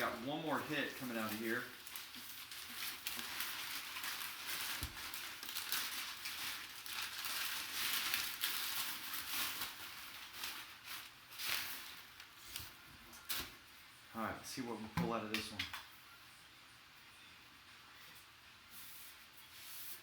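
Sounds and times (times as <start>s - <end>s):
packing paper crinkling: 0.0s - 13.6s.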